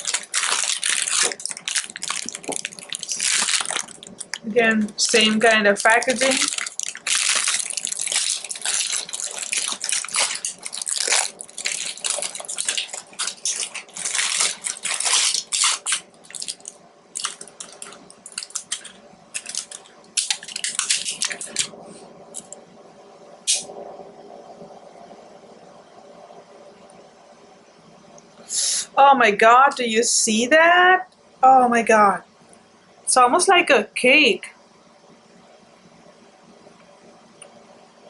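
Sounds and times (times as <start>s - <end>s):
plastic wrapper crinkling: 0.0s - 22.6s.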